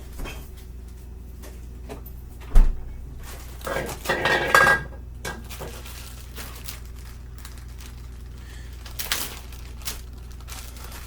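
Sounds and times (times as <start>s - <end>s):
low steady hum: 0.0s - 11.0s
kitchen items clicking and tapping: 3.6s - 5.9s.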